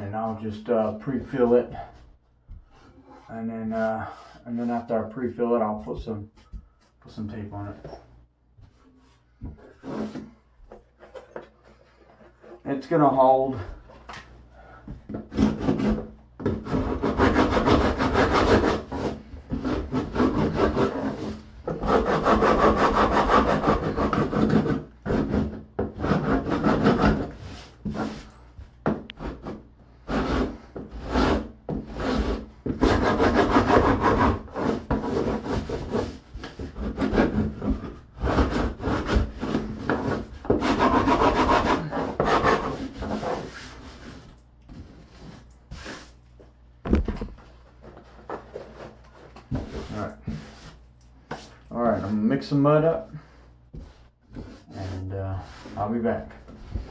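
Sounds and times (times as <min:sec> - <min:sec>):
hand tool scraping drywall: 0:09.0 - 0:13.9, 0:14.9 - 0:46.2, 0:48.0 - 0:52.3, 0:53.7 - 0:56.9.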